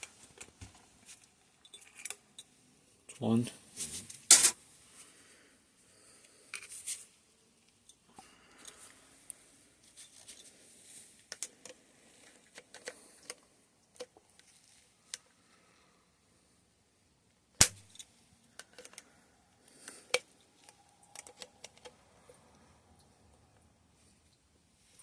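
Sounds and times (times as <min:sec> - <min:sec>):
sharp snap: 0:17.6 - 0:17.8.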